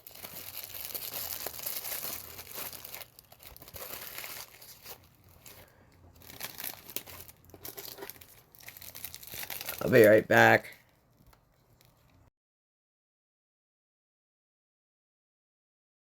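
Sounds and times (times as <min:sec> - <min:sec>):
plastic packaging crinkling: 0:00.0 - 0:12.3.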